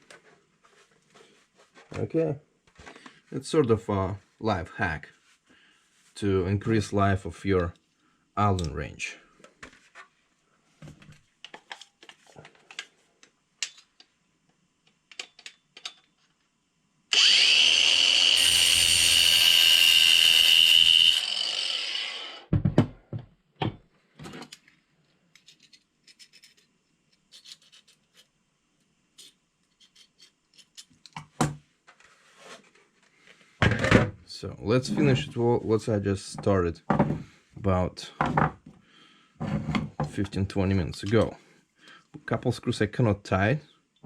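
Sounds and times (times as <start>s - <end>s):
angle grinder whining and grinding: 17.1s - 22.5s.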